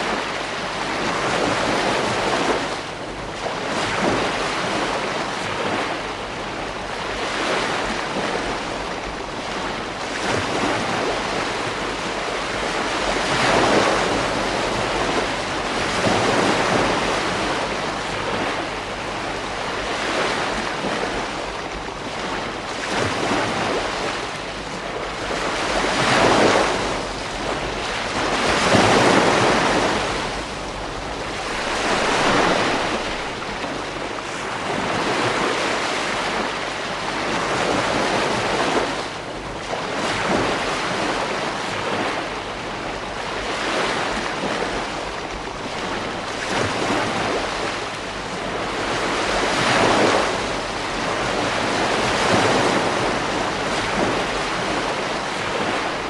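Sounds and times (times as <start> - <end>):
ocean waves breaking on a beach: 0.0 - 56.0
wind on microphone: 0.0 - 56.0.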